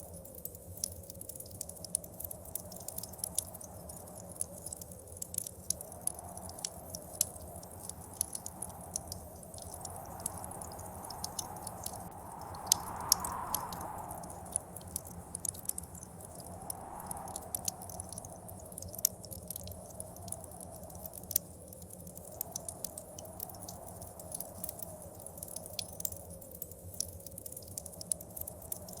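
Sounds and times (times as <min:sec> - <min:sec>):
wood fire crackling and popping: 0:00.0 - 0:29.0
blizzard wind gusts: 0:05.7 - 0:20.9.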